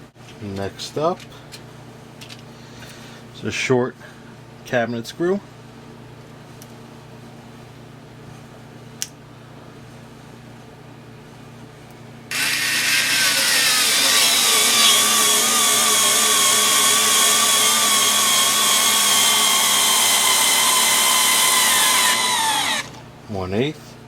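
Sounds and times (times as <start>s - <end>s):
electric screwdriver whining: 12.3s - 23.0s.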